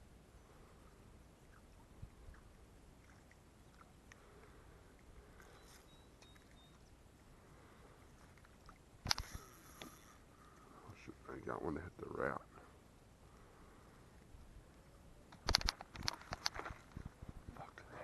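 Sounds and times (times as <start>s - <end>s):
small clicks: 8.3s - 10.2s, 15.3s - 16.7s.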